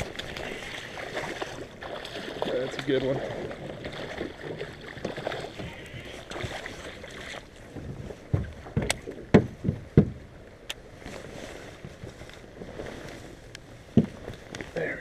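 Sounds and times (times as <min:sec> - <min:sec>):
dull thumps and knocks: 0:07.7 - 0:10.3, 0:13.9 - 0:14.4.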